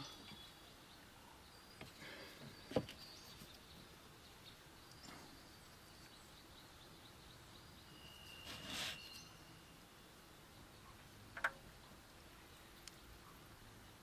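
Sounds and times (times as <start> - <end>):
faint high chirping: 0.0 - 11.1.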